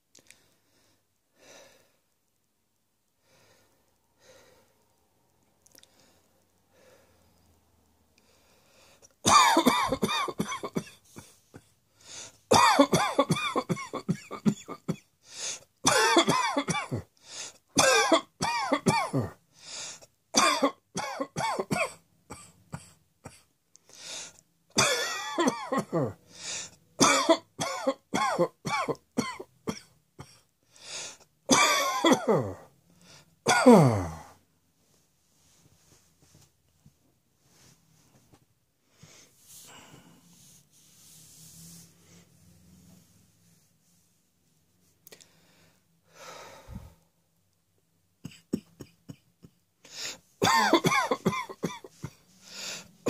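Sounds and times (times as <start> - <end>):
person coughing: 9.3 - 11.7, 12.5 - 15.1, 15.8 - 17.1, 17.8 - 19.4, 20.4 - 23.5, 24.8 - 26.2, 27.0 - 30.4, 31.5 - 32.7, 33.5 - 34.4, 48.2 - 52.2.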